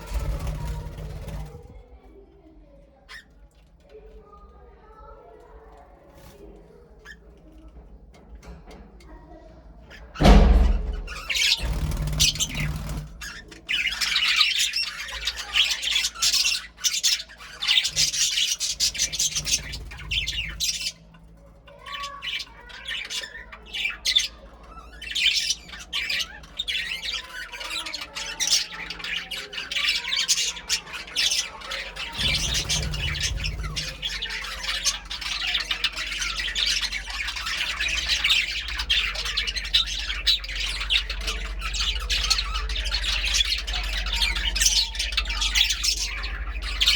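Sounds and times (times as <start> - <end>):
budgerigars chirping and chattering: 0.0 - 46.9.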